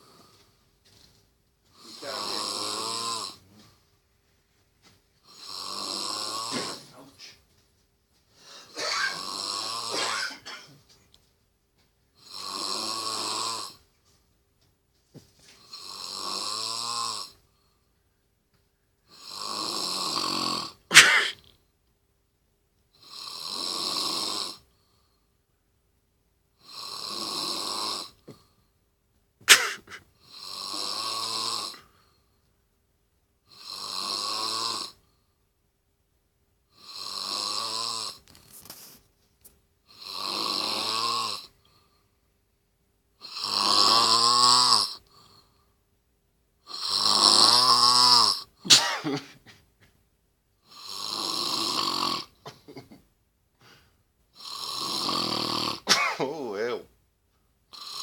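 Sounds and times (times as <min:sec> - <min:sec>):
person snoring: 0:01.8 - 0:03.8, 0:05.2 - 0:07.2, 0:08.4 - 0:10.4, 0:12.2 - 0:13.8, 0:15.6 - 0:17.4, 0:19.1 - 0:21.4, 0:23.0 - 0:24.7, 0:26.6 - 0:28.4, 0:29.5 - 0:31.9, 0:33.5 - 0:35.1, 0:36.7 - 0:38.2, 0:39.9 - 0:41.9, 0:43.2 - 0:45.5, 0:46.7 - 0:48.8, 0:50.6 - 0:53.0, 0:54.4 - 0:56.8, 0:57.7 - 0:58.0.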